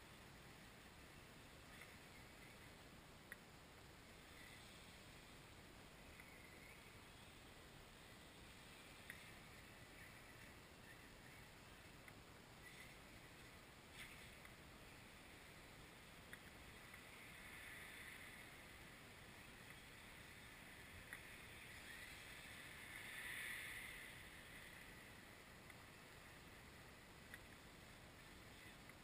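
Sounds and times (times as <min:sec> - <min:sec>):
faint high whine: 0:00.0 - 0:29.0
faint clicks: 0:01.7 - 0:03.5, 0:06.0 - 0:07.4, 0:08.6 - 0:14.6, 0:16.2 - 0:25.0, 0:25.6 - 0:29.0.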